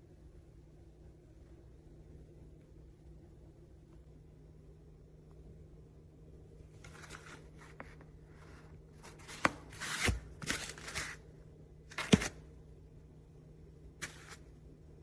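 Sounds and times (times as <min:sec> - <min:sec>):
paper plates rustling and sliding: 0:06.8 - 0:11.3, 0:11.9 - 0:12.4, 0:14.0 - 0:14.6.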